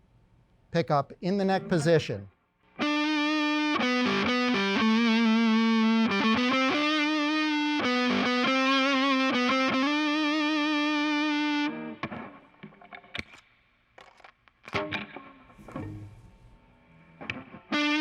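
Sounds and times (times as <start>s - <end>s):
overdriven electric guitar melody: 2.7s - 16.1s, 17.0s - 18.0s.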